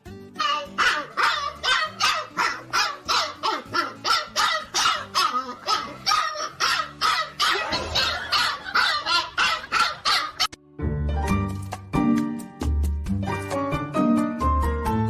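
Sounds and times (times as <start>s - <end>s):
dog barking rapidly: 0.4s - 10.5s.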